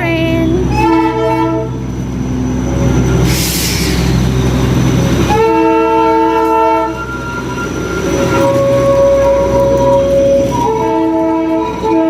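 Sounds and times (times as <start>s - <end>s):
train locomotive rumbling: 0.0s - 12.0s
train horn: 0.5s - 1.8s, 5.3s - 7.5s, 8.2s - 12.0s
burst of hiss: 3.2s - 4.2s.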